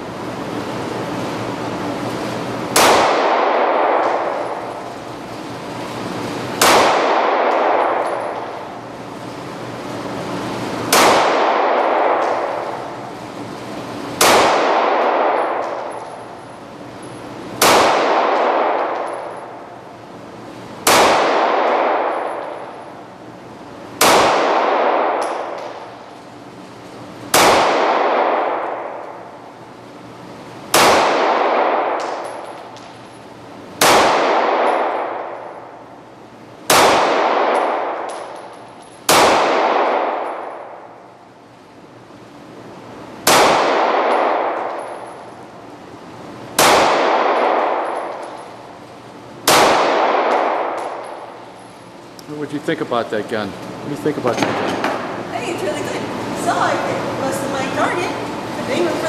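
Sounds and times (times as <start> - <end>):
pistol shots ringing: 2.7 - 5.0, 6.5 - 8.8, 10.9 - 13.1, 14.2 - 16.7, 17.5 - 19.8, 20.8 - 23.1, 24.0 - 26.1, 27.3 - 29.3, 30.7 - 33.0, 33.8 - 35.9, 36.7 - 41.1, 43.2 - 45.6, 46.5 - 52.0, 54.3 - 55.2.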